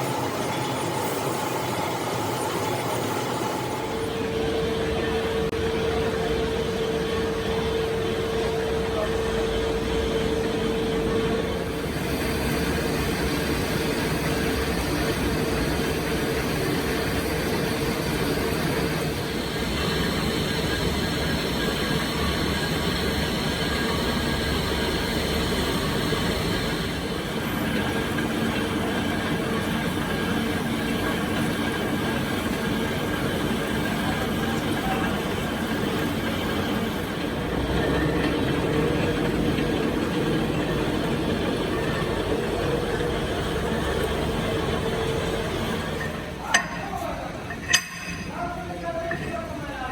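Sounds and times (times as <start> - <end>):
loud humming machinery: 0.0 - 49.9.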